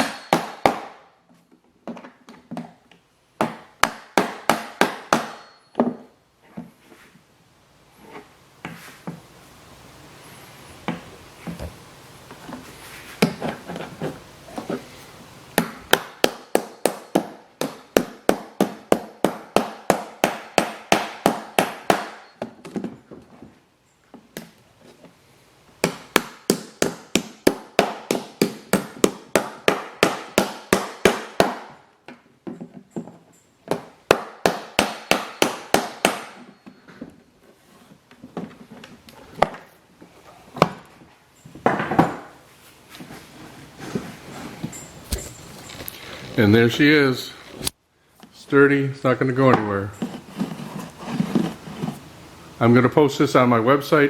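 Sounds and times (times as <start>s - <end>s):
hammer tapping on rivets: 0.0s - 1.0s, 1.8s - 6.1s, 15.5s - 22.9s, 25.7s - 37.1s.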